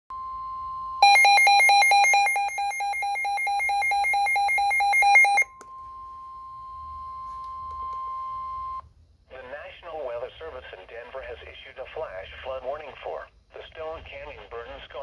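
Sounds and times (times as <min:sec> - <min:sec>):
steady alarm tone: 0:00.2 - 0:07.3
rapid electronic beeping: 0:01.0 - 0:05.4.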